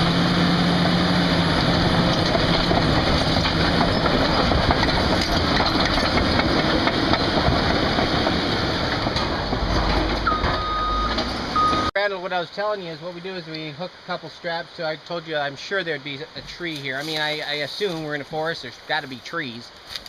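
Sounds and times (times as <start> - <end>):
heavy engine clattering: 0.0 - 11.9.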